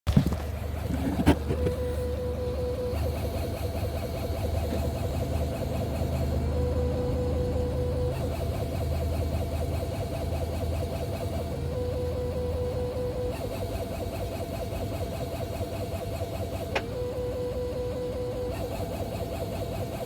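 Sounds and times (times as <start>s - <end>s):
car low drone: 0.4s - 13.3s
high whining tone: 0.7s - 15.0s.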